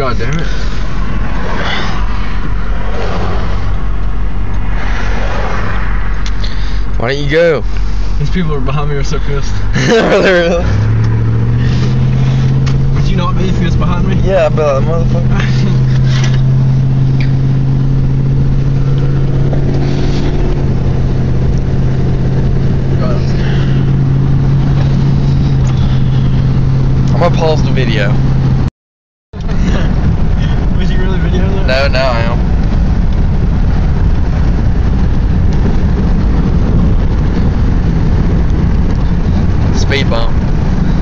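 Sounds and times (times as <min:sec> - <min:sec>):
rumbling road noise: 0:00.0 - 0:28.7, 0:29.3 - 0:41.0
truck engine hum: 0:00.0 - 0:28.7, 0:29.3 - 0:41.0.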